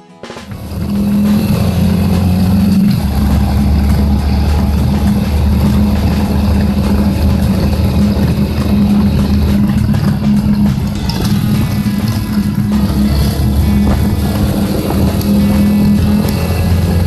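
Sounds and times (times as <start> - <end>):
motorcycle engine running: 0.4 - 17.0
wind and road noise: 0.5 - 17.0.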